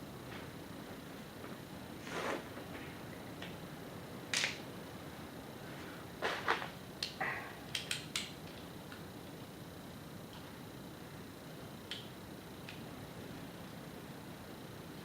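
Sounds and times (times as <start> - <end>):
sharp light clicks: 7.0 - 9.1, 11.8 - 12.9.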